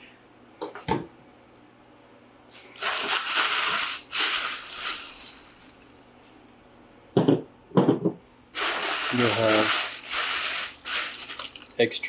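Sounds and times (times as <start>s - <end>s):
plastic packaging crinkling: 2.6s - 6.0s, 8.6s - 12.0s.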